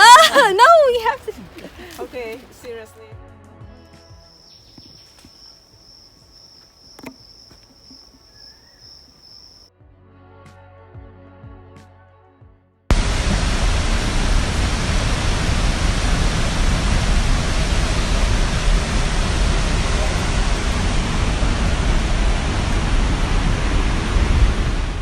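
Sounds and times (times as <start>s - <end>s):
deep unsteady rumble: 12.9s - 25.0s
loud steady rushing noise: 12.9s - 25.0s.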